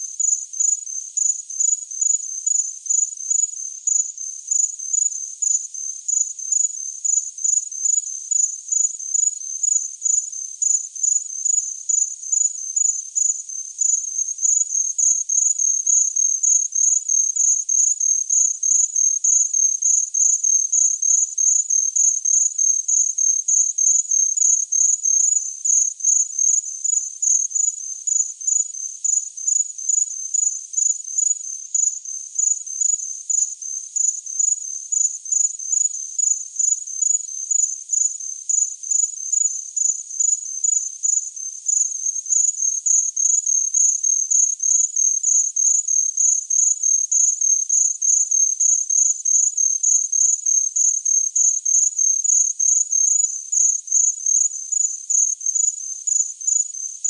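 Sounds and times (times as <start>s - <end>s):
cricket chirping: 0.0s - 57.0s.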